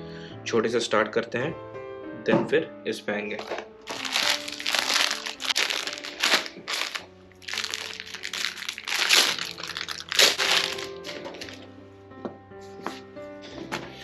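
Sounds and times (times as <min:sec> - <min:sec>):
package being torn open: 0:03.4 - 0:11.6
plastic packaging crinkling: 0:03.4 - 0:11.7.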